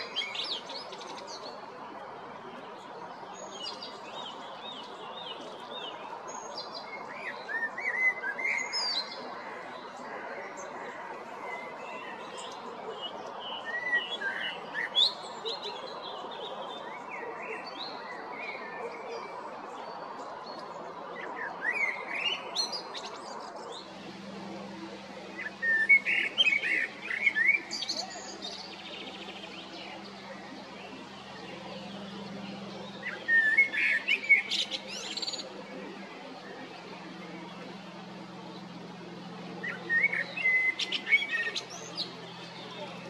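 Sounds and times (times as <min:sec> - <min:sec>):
blackbird singing: 0:00.0 - 0:01.5, 0:03.3 - 0:09.9, 0:21.2 - 0:43.0.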